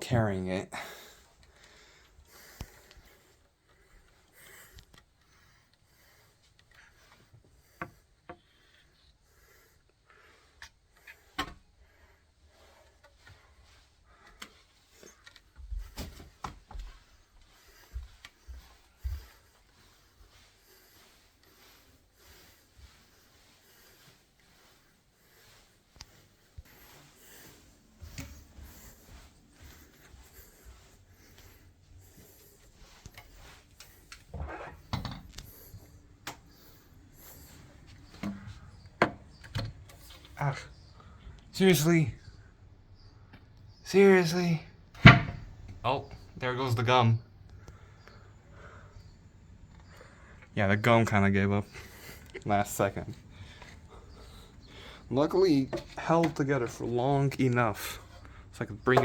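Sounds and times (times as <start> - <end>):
wooden bed parts knocking: 45.0 - 45.6.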